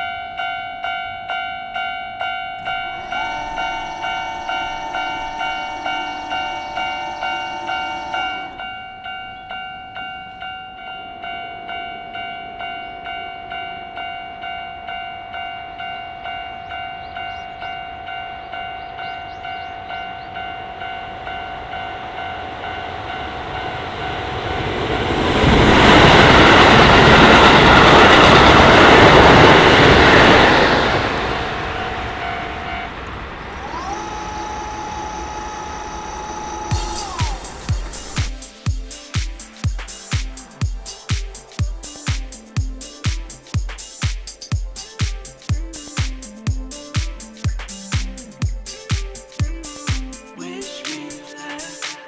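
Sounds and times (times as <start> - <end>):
level crossing bell ringing: 0.0 - 24.4
train passing: 0.0 - 52.0.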